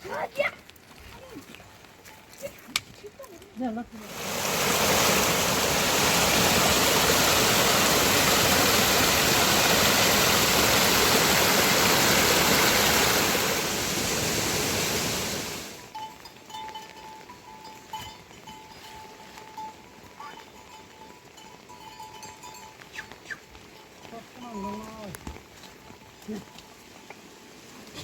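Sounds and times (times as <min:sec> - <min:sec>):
rush of running water: 0:04.0 - 0:15.9.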